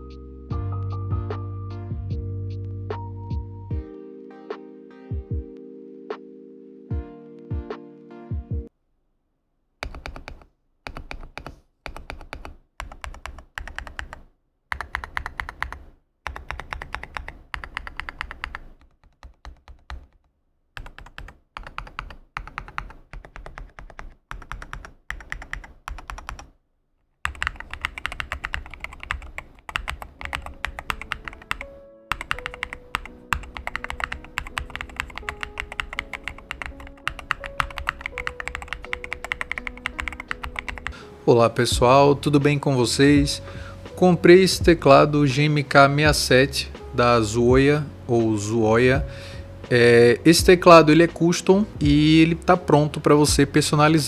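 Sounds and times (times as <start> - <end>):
soft background music: 0.0 - 8.7, 27.3 - 54.0
fast typing on mechanical keyboard: 9.8 - 26.5, 27.2 - 41.0.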